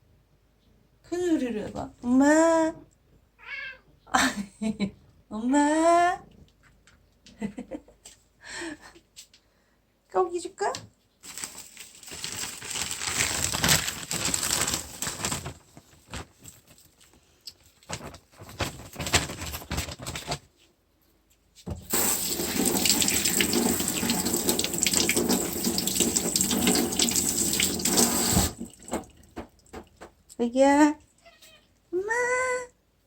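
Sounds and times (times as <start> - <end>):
tap water running: 21.8 - 30.1.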